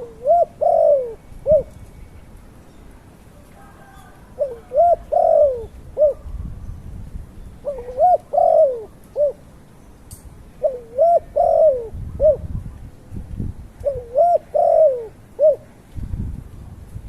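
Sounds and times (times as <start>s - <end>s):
bird cooing: 0.0s - 1.8s, 3.8s - 6.5s, 7.6s - 9.4s, 10.6s - 12.7s, 13.8s - 15.7s.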